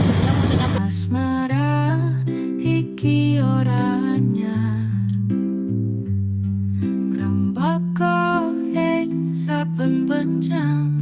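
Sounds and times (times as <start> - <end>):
person singing softly: 0.8 - 5.4, 6.9 - 11.0.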